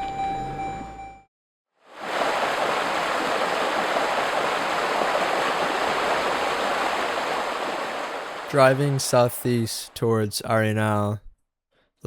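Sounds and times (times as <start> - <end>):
water rushing: 1.9 - 10.2.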